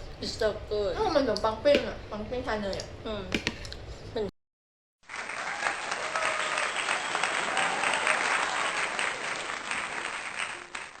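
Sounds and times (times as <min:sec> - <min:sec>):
applause: 0:05.0 - 0:11.0.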